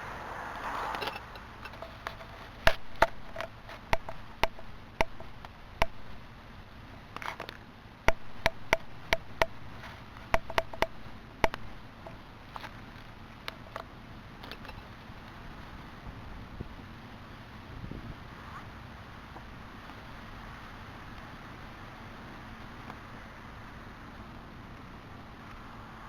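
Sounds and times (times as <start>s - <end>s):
soft rush of flame: 0.0s - 2.7s
bonfire crackling: 0.0s - 26.0s.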